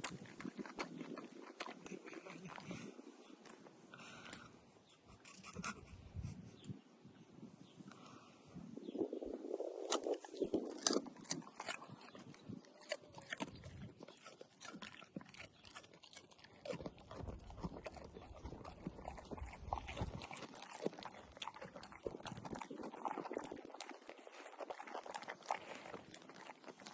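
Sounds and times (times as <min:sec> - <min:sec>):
dog crunching cucumber: 0:00.0 - 0:03.6, 0:09.8 - 0:26.9.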